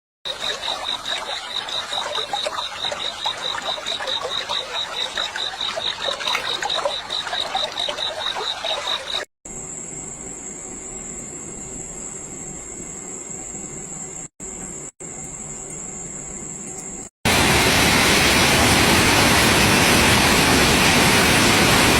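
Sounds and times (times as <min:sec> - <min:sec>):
frogs and insects chirping: 0:00.3 - 0:16.7.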